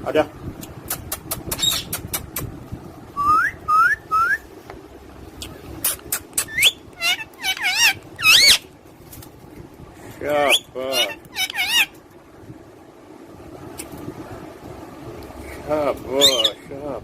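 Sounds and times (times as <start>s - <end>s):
parrots whistling: 1.5s - 2.0s, 5.9s - 8.7s, 10.5s - 12.0s, 16.2s - 16.6s.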